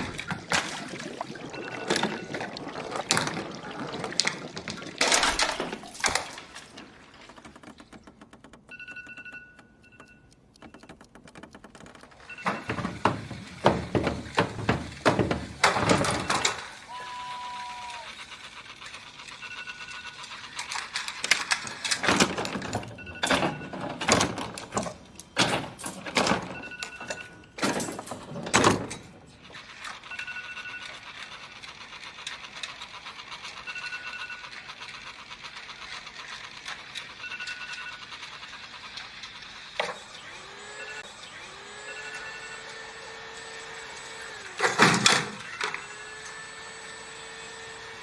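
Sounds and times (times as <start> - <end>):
loud knocks and thumps: 10.7 - 16.3
phone alarm two-note chime: 41.8 - 42.8.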